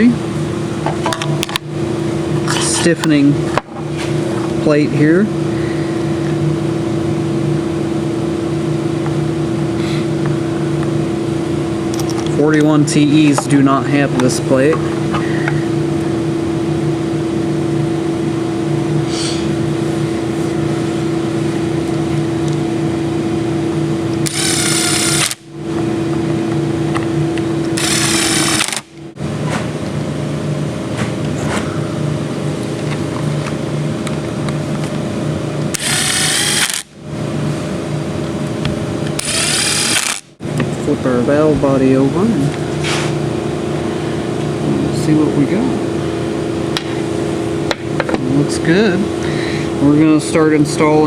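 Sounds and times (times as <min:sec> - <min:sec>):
steady background hum: 0:00.0 - 0:51.0
power driver spinning: 0:24.2 - 0:25.4, 0:27.6 - 0:29.0, 0:35.7 - 0:36.9, 0:39.1 - 0:40.3.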